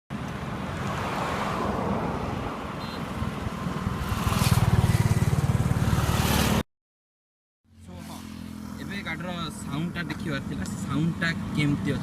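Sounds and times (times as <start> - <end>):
motorcycle engine running: 3.8 - 6.6.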